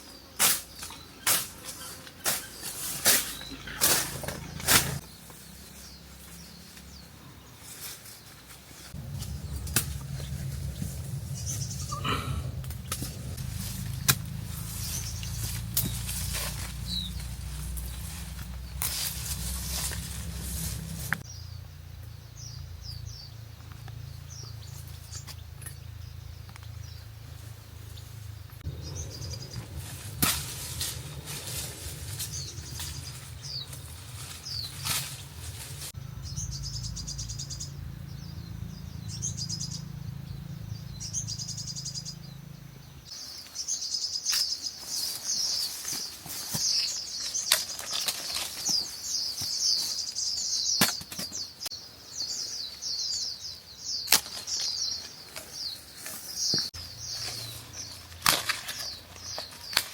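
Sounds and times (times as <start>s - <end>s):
small birds chirping and twittering: 0.0s - 59.9s
low steady rumble: 9.0s - 24.9s, 25.8s - 43.1s.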